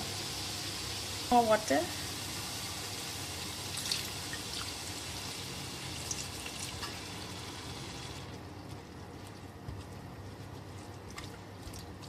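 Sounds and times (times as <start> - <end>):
water hissing and bubbling in wok: 0.0 - 8.4.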